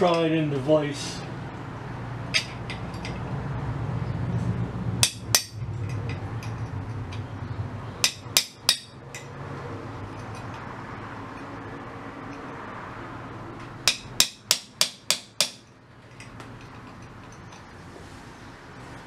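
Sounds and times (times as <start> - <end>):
sharp metal knocks in a vise: 5.0 - 7.2, 8.0 - 9.3, 13.8 - 16.5.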